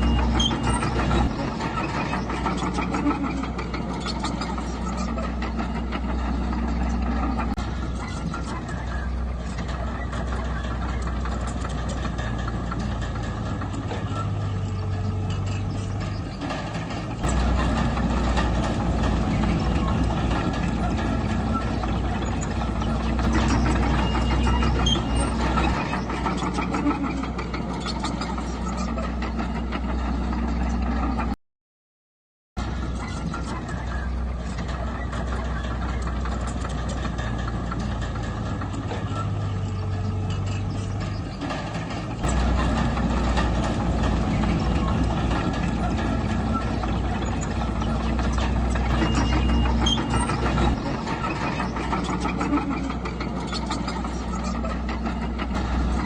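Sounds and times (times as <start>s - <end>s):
diesel engine humming: 0.0s - 31.4s, 32.6s - 56.0s
metallic clatter: 32.6s - 56.0s.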